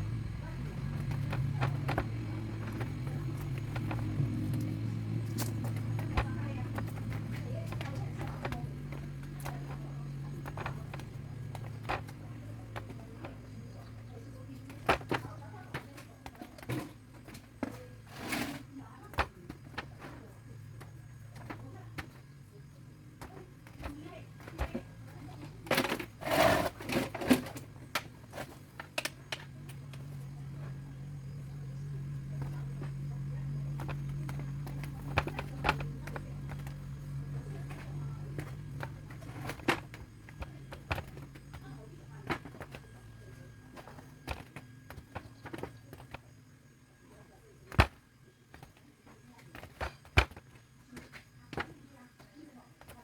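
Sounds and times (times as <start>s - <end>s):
oranges knocking and clattering: 0.0s - 53.0s
sorting machine motor hum: 0.0s - 53.0s.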